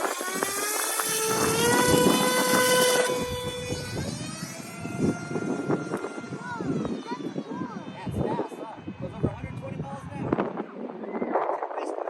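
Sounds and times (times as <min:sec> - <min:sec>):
model plane motor whining: 0:00.0 - 0:08.7
wind buffeting microphone: 0:00.0 - 0:12.0.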